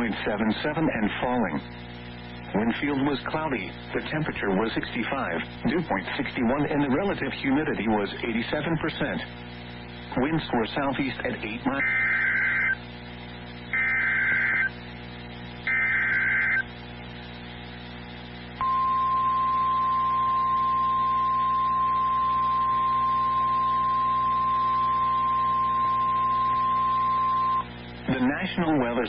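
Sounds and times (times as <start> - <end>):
low radio hum: 0.0 - 29.0
digital data bursts: 10.8 - 12.8, 13.7 - 14.8, 15.6 - 16.7
steady warning alarm tone: 11.8 - 12.8, 13.7 - 14.8, 15.6 - 16.6, 18.6 - 27.7.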